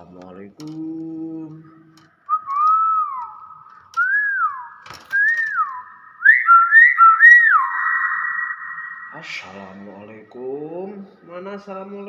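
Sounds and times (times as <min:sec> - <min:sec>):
myna whistling: 0:02.3 - 0:09.7.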